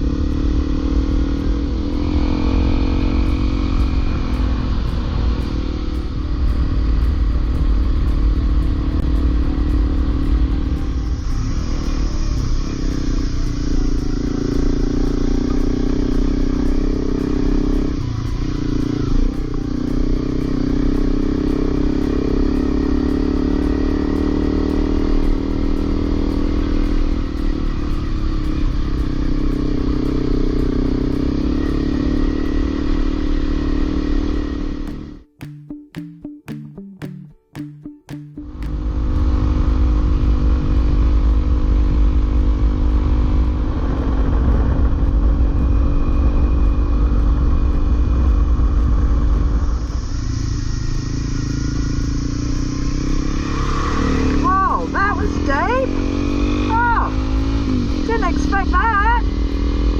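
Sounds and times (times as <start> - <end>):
low wind rumble: 0.0 - 35.2, 38.4 - 59.9
motorcycle engine running: 0.0 - 59.9.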